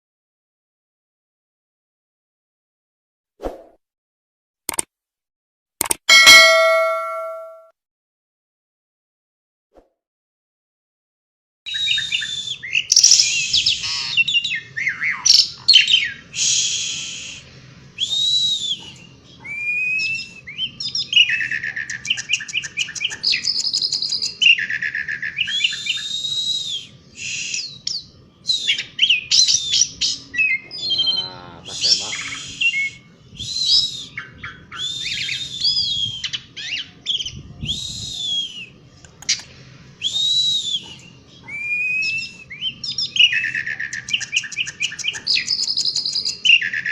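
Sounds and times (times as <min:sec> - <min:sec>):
starling singing: 0:27.7 - 0:33.1.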